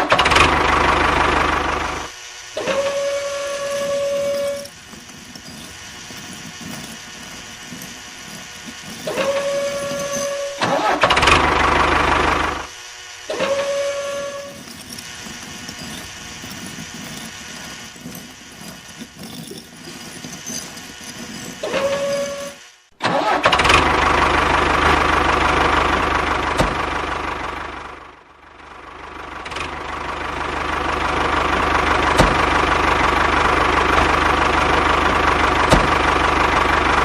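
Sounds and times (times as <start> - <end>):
small motor whining: 2.7 - 11.5, 13.3 - 22.6
rough grinding noise: 2.7 - 12.6, 13.3 - 22.8.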